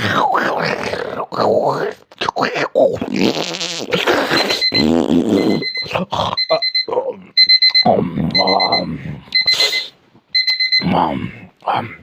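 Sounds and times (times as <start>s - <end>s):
person's wordless vocal sounds: 0.0s - 10.0s, 10.8s - 12.0s
electronic alarm beeping: 4.4s - 11.0s.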